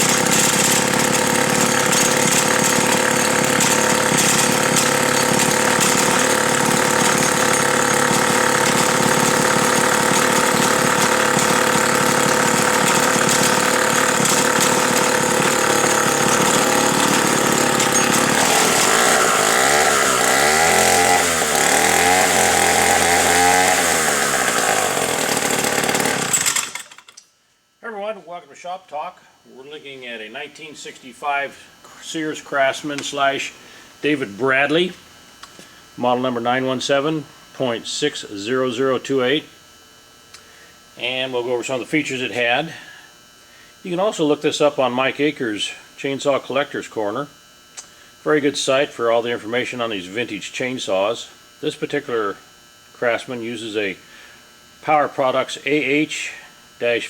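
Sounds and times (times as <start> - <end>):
chainsaw engine revving: 0.0 - 27.1.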